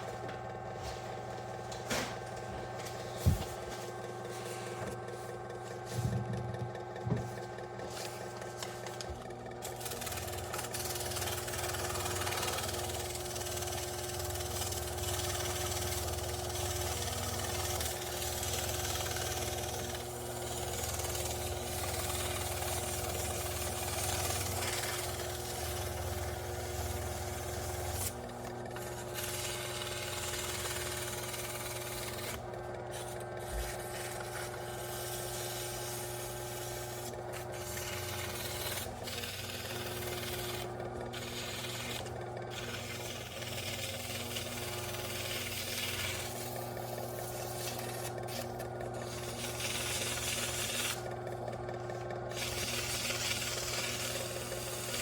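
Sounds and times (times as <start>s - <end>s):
fan motor humming: 0.0s - 55.0s.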